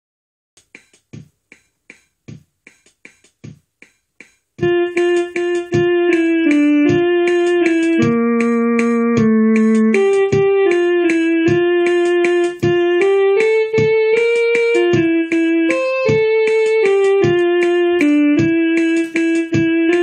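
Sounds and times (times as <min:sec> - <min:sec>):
drum machine beat: 0:00.6 - 0:20.0
electric piano melody: 0:04.6 - 0:20.0.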